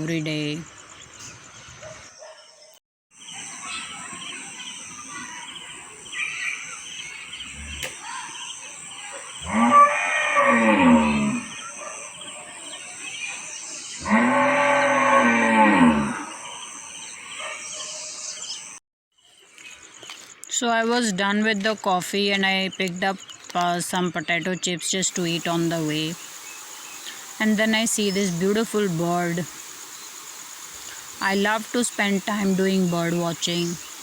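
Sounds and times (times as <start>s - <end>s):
high-pitched insect buzz: 6.1s - 18.8s, 25.1s - 34.0s
cow mooing: 9.4s - 11.6s, 14.0s - 16.5s.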